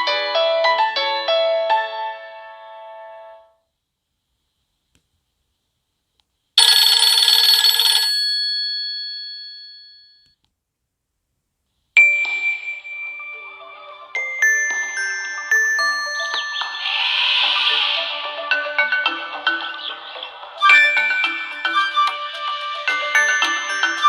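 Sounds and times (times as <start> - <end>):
chiming phone alert: 6.6 - 10.2, 22.9 - 24.0
phone ringtone melody: 6.6 - 10.2, 12.0 - 24.0.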